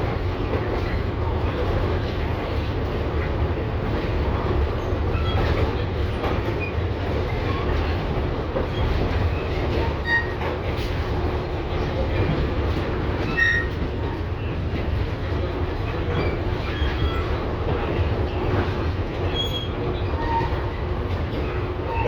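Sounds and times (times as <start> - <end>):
tram rumbling: 0.0 - 22.0
wheels squealing on rail: 4.8 - 10.9, 13.2 - 14.2, 15.9 - 22.0.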